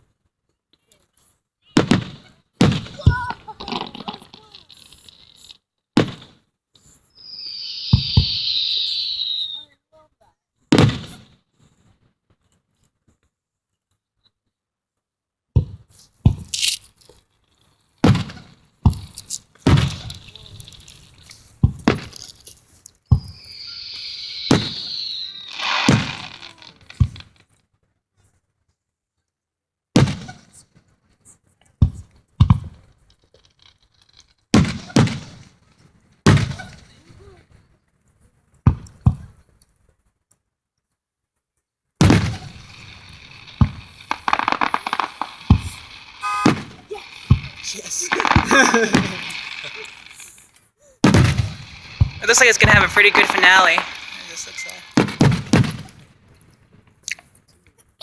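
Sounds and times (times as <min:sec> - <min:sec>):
fireworks booming: 0:01.8 - 0:05.0, 0:07.2 - 0:09.5, 0:18.1 - 0:22.2, 0:23.2 - 0:27.3, 0:42.0 - 0:56.1
fireworks crackling: 0:01.9 - 0:06.3, 0:07.2 - 0:09.6, 0:16.3 - 0:17.1, 0:18.0 - 0:27.4, 0:42.0 - 0:56.6.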